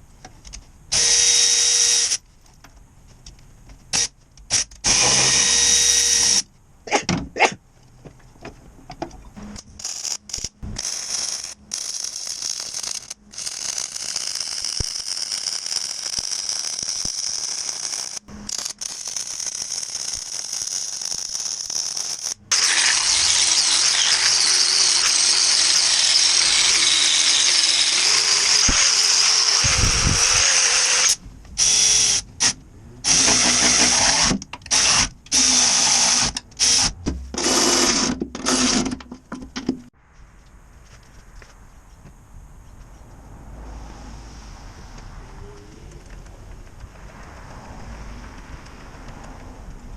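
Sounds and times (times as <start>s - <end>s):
power tool whining: 22.5s - 32.2s.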